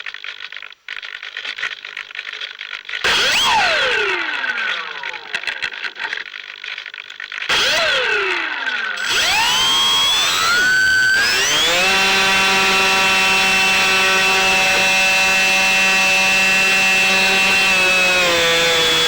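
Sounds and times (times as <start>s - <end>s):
model plane electric motor whine: 3.0s - 6.2s, 7.5s - 19.0s.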